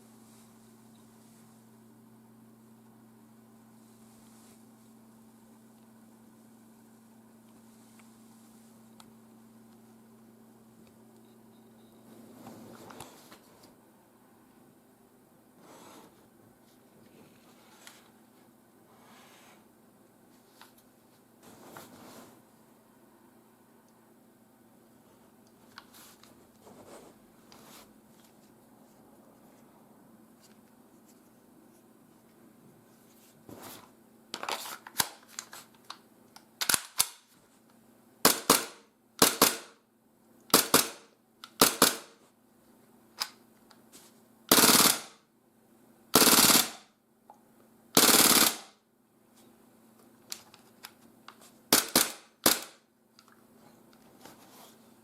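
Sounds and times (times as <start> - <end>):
airsoft pistol shots: 38.3 - 39.8, 51.7 - 52.8.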